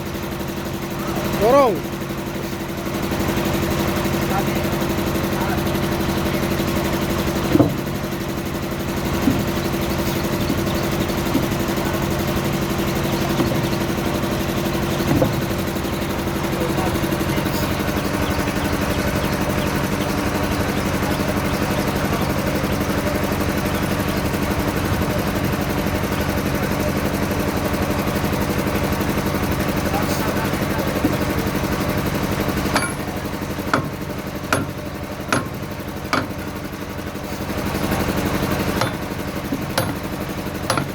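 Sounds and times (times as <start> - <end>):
diesel engine idling: 0.0 - 40.9
metallic knocks: 7.4 - 8.0, 9.1 - 14.0, 14.6 - 16.0, 32.6 - 36.5, 38.8 - 40.9.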